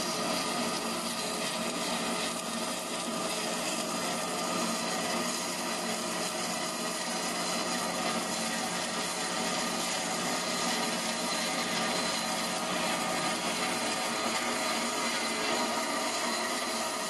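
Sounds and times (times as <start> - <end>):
wire foam cutter sawing foam: 0.0 - 17.0.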